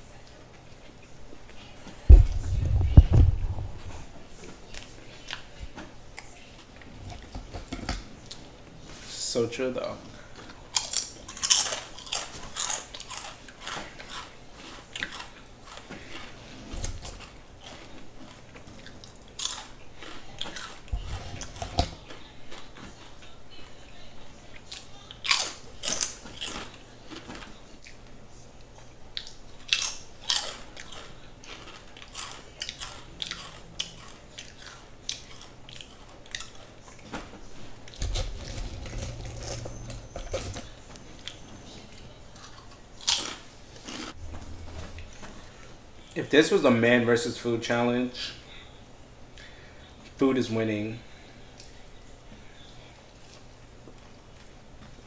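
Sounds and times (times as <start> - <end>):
person chewing crunchy food: 10.2 - 23.4, 24.6 - 28.0, 29.1 - 37.1, 37.8 - 45.8.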